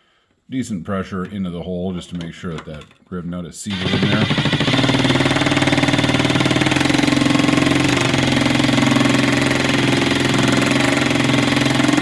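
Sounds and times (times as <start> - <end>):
impact gun hammering: 3.7 - 12.0.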